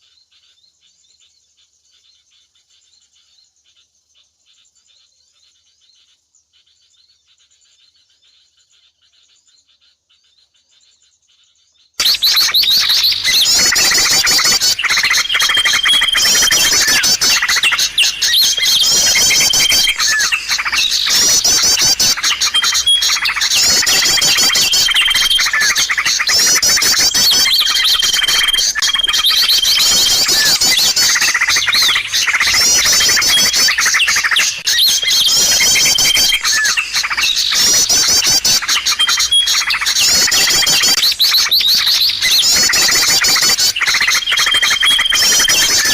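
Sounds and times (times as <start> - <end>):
small birds chirping: 0.0 - 45.9
high held whistle: 12.0 - 43.4.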